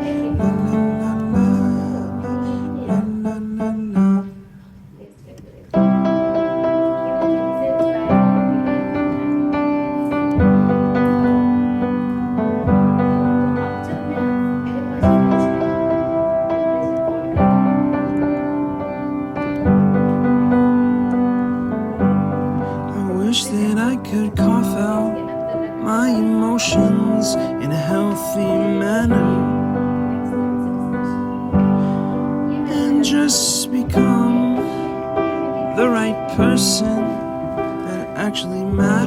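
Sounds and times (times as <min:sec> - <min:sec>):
piano sustained chords: 0:00.0 - 0:04.6, 0:05.8 - 0:39.0.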